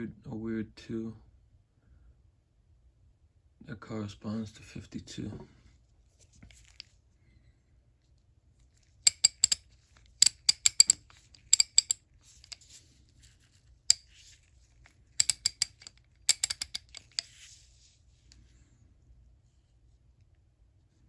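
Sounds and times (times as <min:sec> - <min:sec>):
ratchet clicking: 0:09.1 - 0:09.6, 0:10.2 - 0:12.6, 0:15.2 - 0:17.2.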